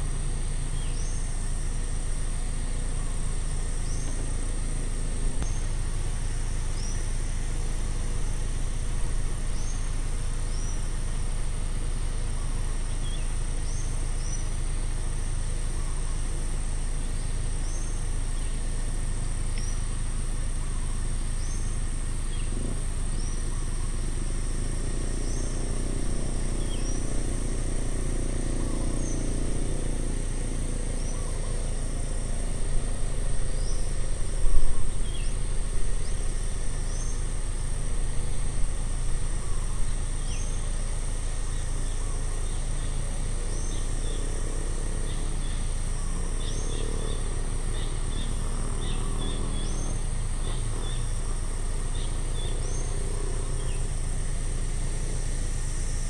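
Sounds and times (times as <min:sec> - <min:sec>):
high insect drone: 0:00.0 - 0:56.0
birds chirping: 0:02.9 - 0:05.8, 0:21.4 - 0:54.0.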